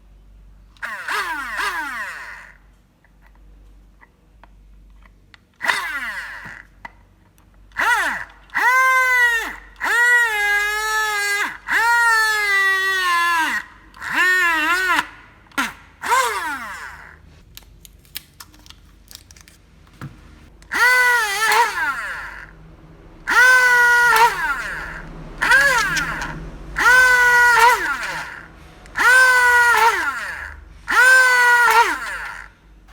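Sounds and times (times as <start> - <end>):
small motor whining: 0.8 - 2.6, 5.6 - 6.8, 7.7 - 17.4, 20.6 - 22.6, 23.2 - 32.9.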